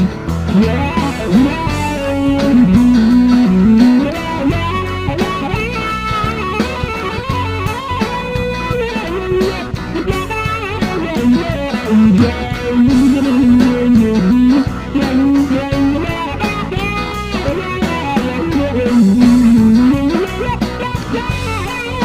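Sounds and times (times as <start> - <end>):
electric guitar lead: 0.0 - 22.0
rock band playing: 0.0 - 22.0.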